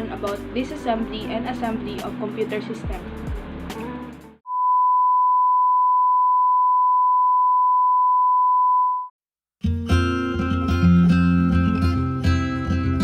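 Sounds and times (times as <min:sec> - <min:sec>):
electronic beep tone: 0:04.5 - 0:09.1
guitar music: 0:09.6 - 0:13.0.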